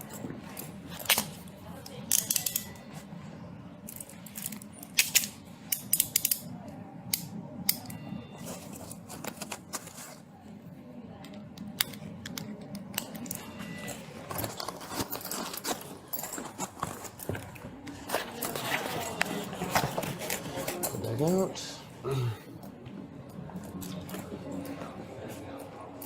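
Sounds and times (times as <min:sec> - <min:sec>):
handcuffs clicking and jingling: 0:00.0 - 0:03.0, 0:03.9 - 0:06.5, 0:11.2 - 0:17.4
rustling movement: 0:08.4 - 0:10.5, 0:13.4 - 0:21.8.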